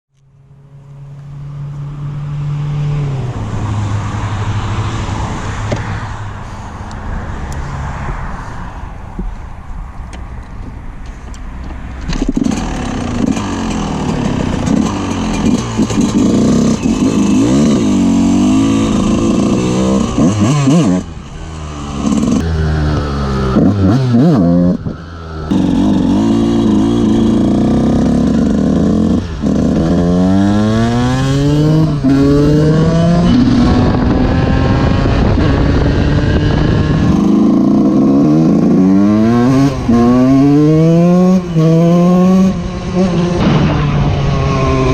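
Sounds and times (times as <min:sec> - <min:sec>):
two-stroke motocross engine revving: 0:12.2 - 0:44.9.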